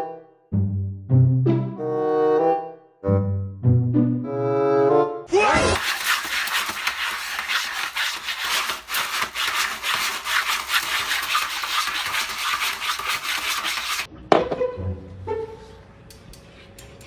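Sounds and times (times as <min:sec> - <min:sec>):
rapid rhythmic scratching: 0:05.6 - 0:14.1.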